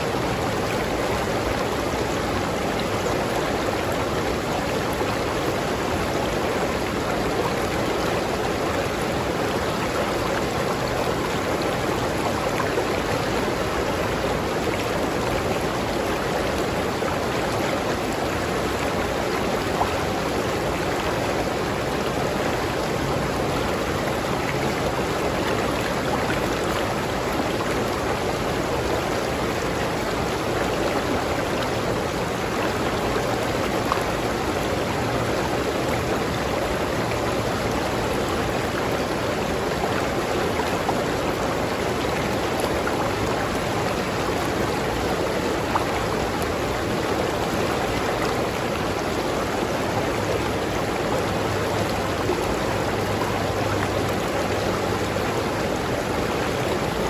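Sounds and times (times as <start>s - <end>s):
river water flowing over rocks: 0.0s - 57.0s.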